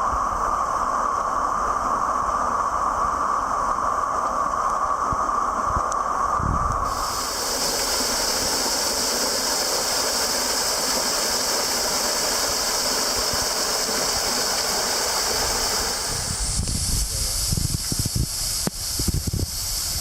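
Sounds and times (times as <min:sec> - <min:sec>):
waterfall pouring: 0:06.8 - 0:17.0.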